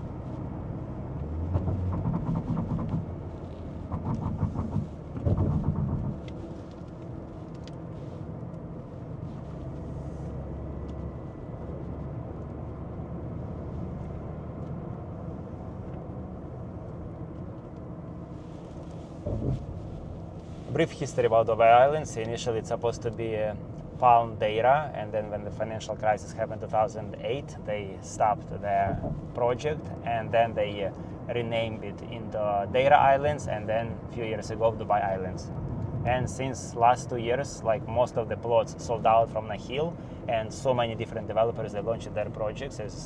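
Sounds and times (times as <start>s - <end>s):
car engine and road noise: 0.0s - 43.0s.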